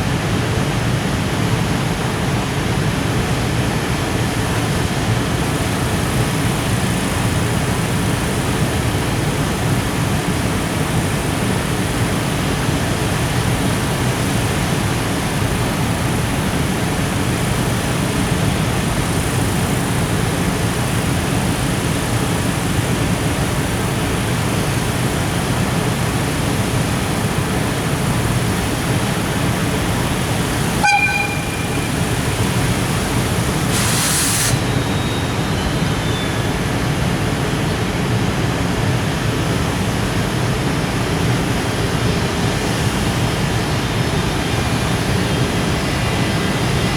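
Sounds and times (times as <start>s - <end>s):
train wheels rumbling on rails: 0.0s - 46.9s
train horn toot: 30.8s - 32.5s.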